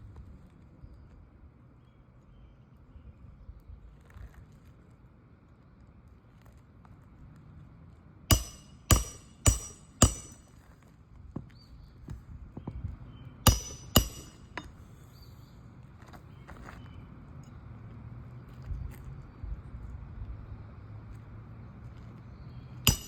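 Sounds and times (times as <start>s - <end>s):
hammer striking roofing nails: 8.3s - 10.4s, 13.5s - 14.7s.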